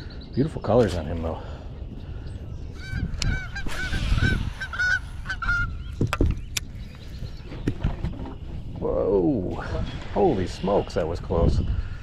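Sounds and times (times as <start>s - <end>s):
bird calling: 0.0s - 9.4s.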